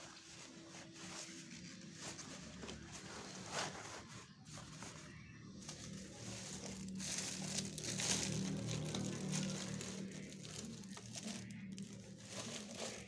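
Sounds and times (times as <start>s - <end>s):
plastic packaging crinkling: 0.0s - 13.0s.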